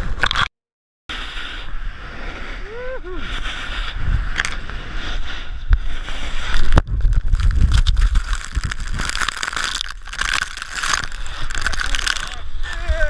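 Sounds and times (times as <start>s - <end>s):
snowboard scraping over snow: 1.1s - 8.1s
wind buffeting microphone: 1.8s - 13.0s.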